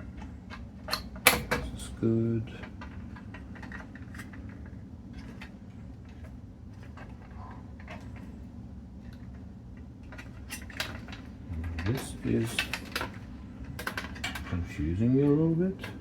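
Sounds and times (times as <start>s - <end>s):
steady low hum: 0.0s - 16.0s
plastic connectors clicking and rattling: 10.1s - 14.5s.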